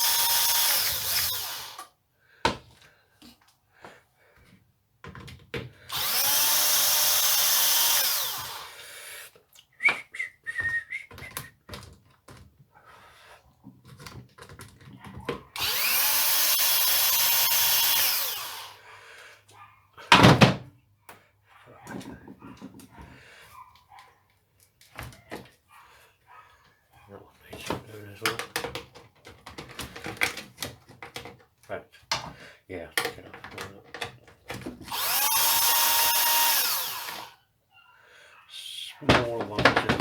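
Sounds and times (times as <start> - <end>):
cordless drill motor whining: 0.0 - 1.9, 5.8 - 8.9, 15.6 - 18.8, 34.5 - 37.4.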